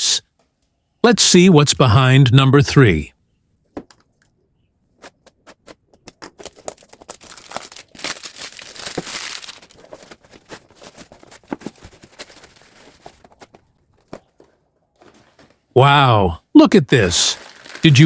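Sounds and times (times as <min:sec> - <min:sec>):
wrapping crinkled and torn: 0:05.0 - 0:14.1, 0:17.2 - 0:18.0.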